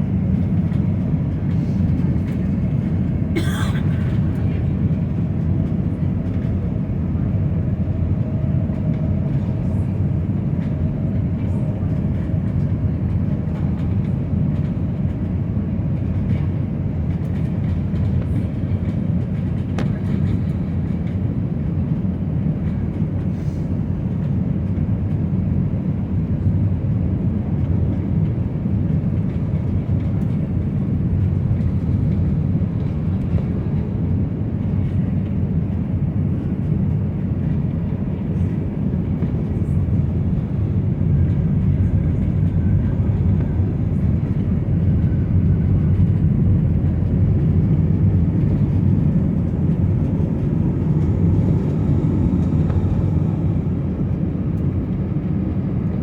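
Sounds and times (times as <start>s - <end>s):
engine rumble: 0.0s - 56.0s
cabin airflow noise: 27.7s - 56.0s.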